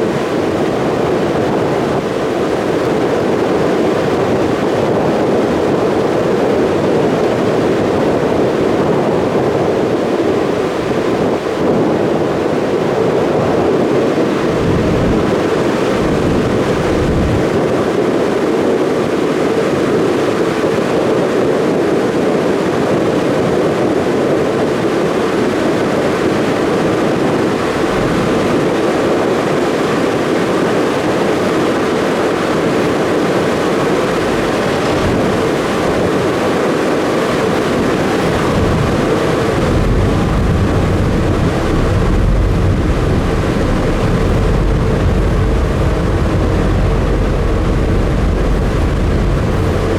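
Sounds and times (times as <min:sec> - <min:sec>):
rushing water: 0:00.0 - 0:49.9
wind: 0:00.0 - 0:49.9
ferry engine rumble: 0:13.9 - 0:18.4, 0:24.2 - 0:49.9
soft low thuds: 0:37.9 - 0:49.9.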